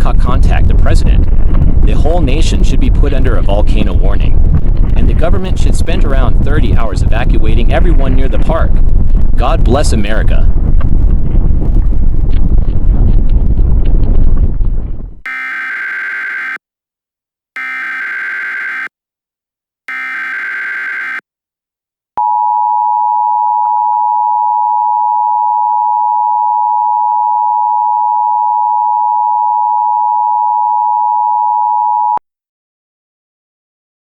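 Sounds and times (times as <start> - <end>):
buzzing digital data bursts: 15.3 - 16.6, 17.6 - 18.9, 19.9 - 21.2
high two-tone alert signal: 15.3 - 16.6, 17.6 - 18.9, 19.9 - 21.2.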